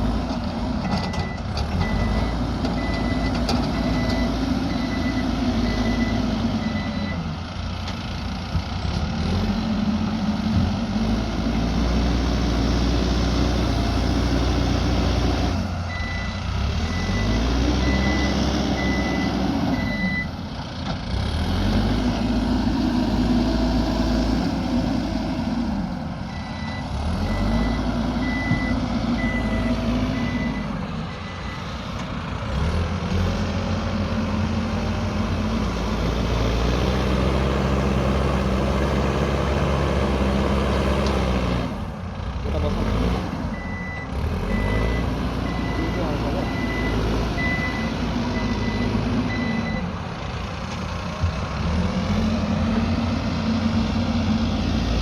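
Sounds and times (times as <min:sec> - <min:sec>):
diesel engine revving: 0:00.0 - 0:55.0
reversing alarm beeping: 0:00.9 - 0:07.3, 0:15.9 - 0:20.3, 0:26.3 - 0:31.7, 0:43.5 - 0:49.9.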